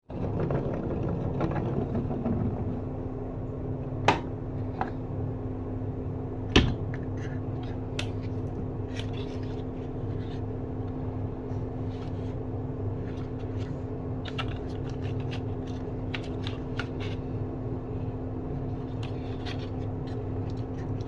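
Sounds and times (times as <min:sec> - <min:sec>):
marbles rolling on wooden track: 0:00.1 - 0:03.0.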